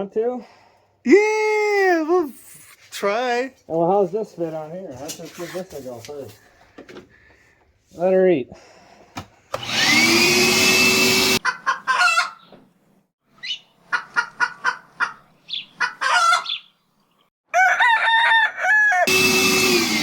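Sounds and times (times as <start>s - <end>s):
motor whining: 9.6s - 11.4s, 19.1s - 20.0s
chicken clucking and squawking: 11.4s - 12.5s, 13.8s - 16.6s.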